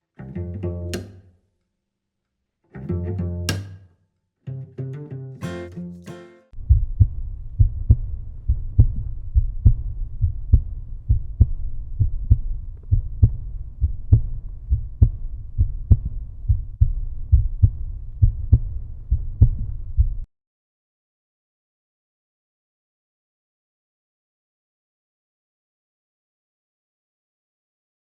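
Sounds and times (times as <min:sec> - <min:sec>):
deep heartbeat thumping: 0:06.6 - 0:20.3.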